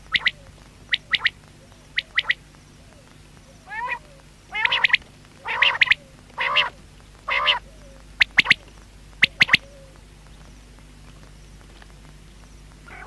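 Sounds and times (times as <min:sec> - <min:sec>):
quail calling: 0:00.0 - 0:08.6, 0:09.2 - 0:10.0.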